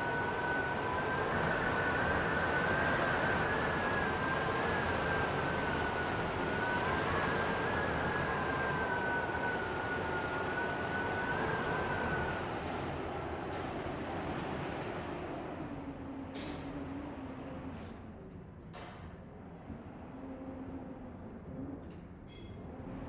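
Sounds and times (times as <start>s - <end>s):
wind whistling howl: 0.0s - 18.2s.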